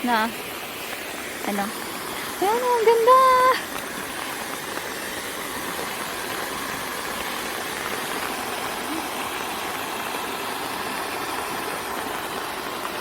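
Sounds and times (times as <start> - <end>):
stream pouring over waterfall: 0.0 - 13.0.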